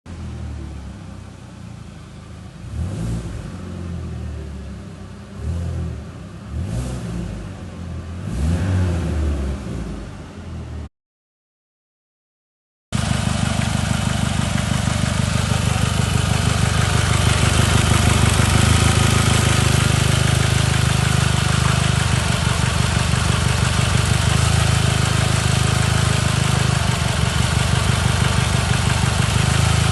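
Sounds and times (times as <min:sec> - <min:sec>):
car engine idling: 0:00.1 - 0:05.4, 0:13.0 - 0:29.9.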